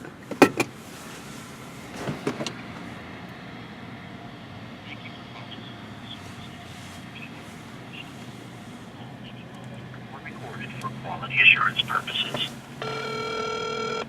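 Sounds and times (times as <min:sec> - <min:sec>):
car interior hum: 0:04.8 - 0:14.0.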